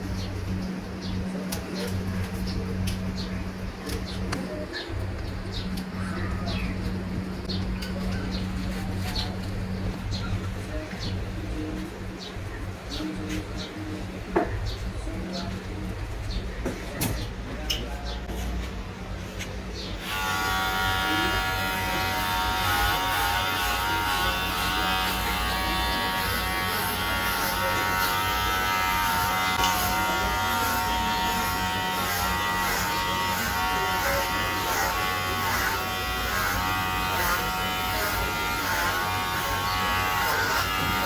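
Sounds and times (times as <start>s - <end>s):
electric hair clippers buzzing: 20.0s - 41.0s.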